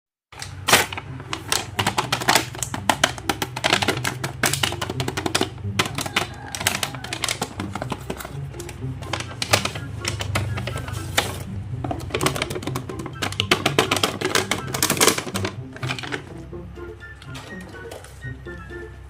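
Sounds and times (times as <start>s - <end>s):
rapid clicking and tapping: 0.4s - 16.3s
background music with bass: 0.9s - 19.0s.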